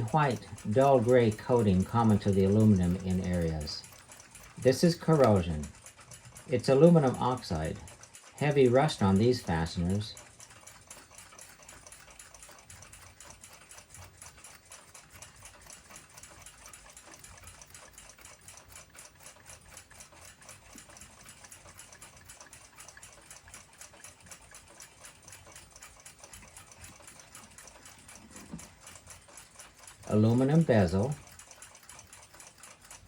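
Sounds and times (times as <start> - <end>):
clock ticking: 0.0 - 33.0.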